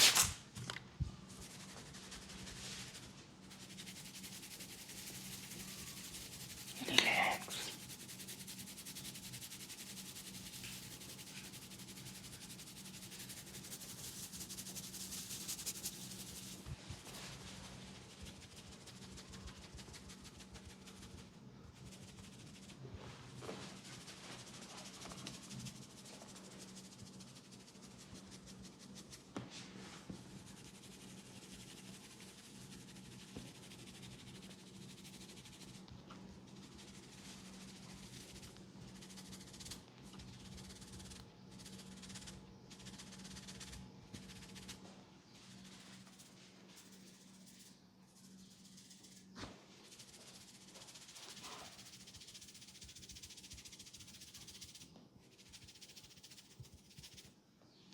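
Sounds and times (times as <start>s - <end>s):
hands rubbing hair and skin: 1.4s - 5.6s, 6.5s - 9.2s, 21.9s - 26.6s, 40.4s - 57.3s.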